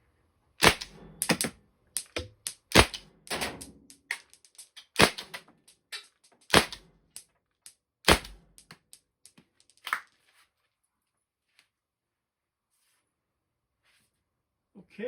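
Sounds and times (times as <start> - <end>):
launcher firing sharp pops: 0.6 - 5.7, 6.4 - 6.8, 8.1 - 8.9
rounds striking metal pan: 0.6 - 6.8, 8.1 - 9.9.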